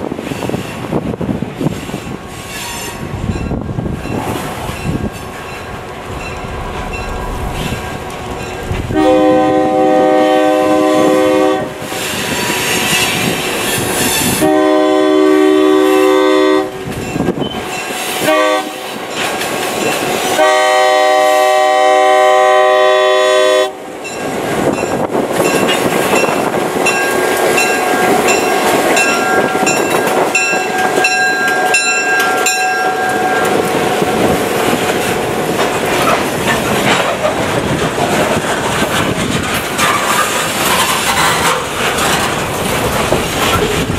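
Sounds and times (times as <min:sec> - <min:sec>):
locomotive engine passing: 0:02.2 - 0:11.8
locomotive horn blasts: 0:08.6 - 0:12.0, 0:14.2 - 0:16.8, 0:18.2 - 0:18.9, 0:20.4 - 0:23.8
wheels clacking over rail joints: 0:24.0 - 0:43.9.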